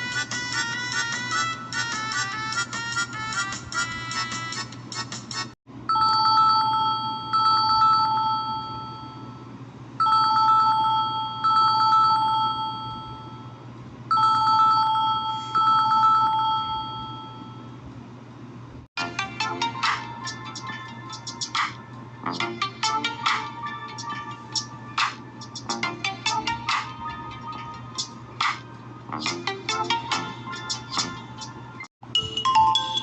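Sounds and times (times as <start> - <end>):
melodic phone ringtone: 5.9 - 9.4, 10.0 - 17.7, 19.0 - 21.6, 22.3 - 28.8, 29.4 - 33.0
phone ringing like old bell: 5.9 - 9.4, 10.0 - 17.8.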